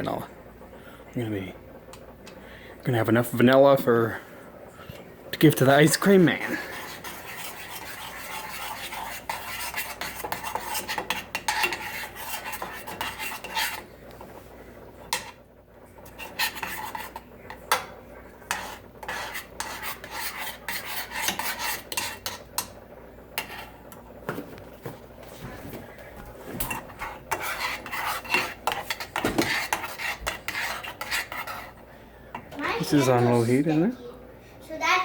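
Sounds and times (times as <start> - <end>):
spoon scraping a saucepan: 5.4 - 13.9, 15.1 - 15.4, 16.0 - 22.8, 23.4 - 24.0, 26.4 - 33.4.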